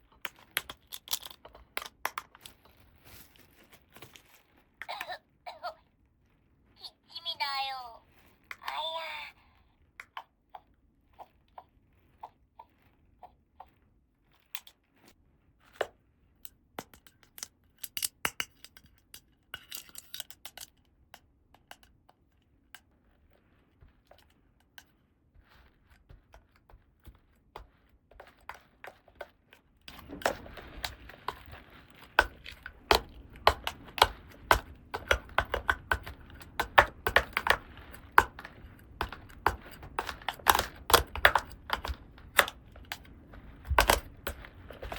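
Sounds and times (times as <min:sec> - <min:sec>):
plastic pieces clicking: 0:00.0 - 0:02.9, 0:15.7 - 0:22.1, 0:27.6 - 0:44.9
packaging rustling: 0:00.0 - 0:04.8.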